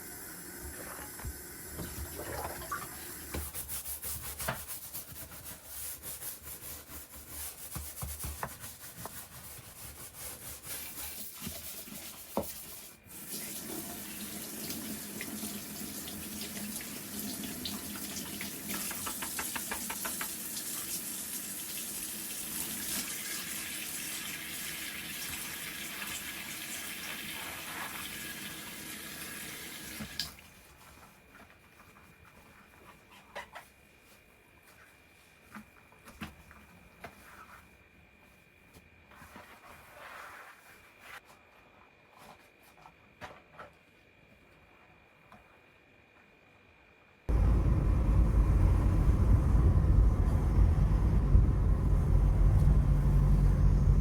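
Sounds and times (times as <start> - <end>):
tap water running into sink: 13.2 - 27.3.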